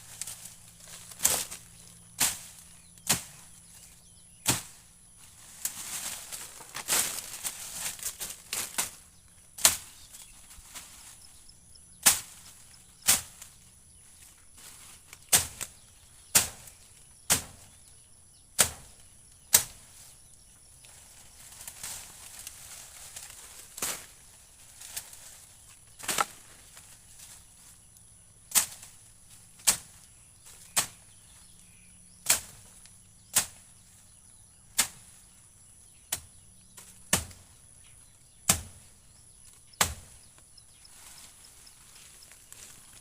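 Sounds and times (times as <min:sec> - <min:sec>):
blade chopping wood: 0:02.2 - 0:03.4, 0:04.4 - 0:04.8, 0:37.1 - 0:37.4, 0:38.5 - 0:38.8, 0:39.8 - 0:40.2.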